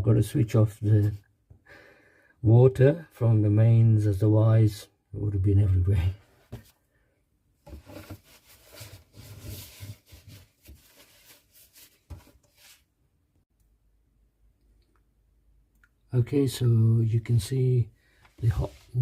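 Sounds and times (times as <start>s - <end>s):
rustling and handling noises: 6.2s - 6.8s, 7.6s - 12.9s.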